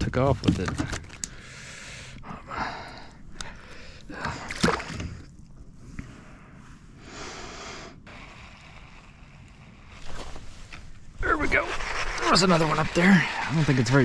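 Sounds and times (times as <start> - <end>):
water splashing against kayak: 4.0 - 6.0.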